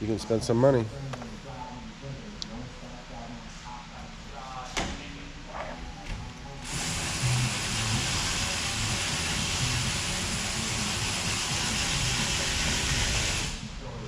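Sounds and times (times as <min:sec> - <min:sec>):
steady loud hiss: 0:06.6 - 0:14.0.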